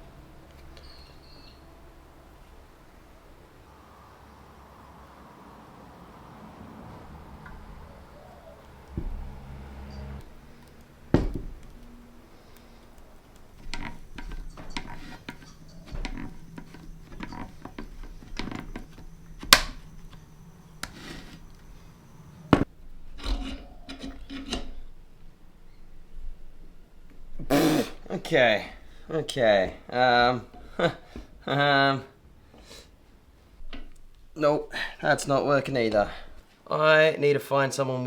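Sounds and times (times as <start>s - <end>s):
hand tools scraping on steel: 9.1s - 22.4s.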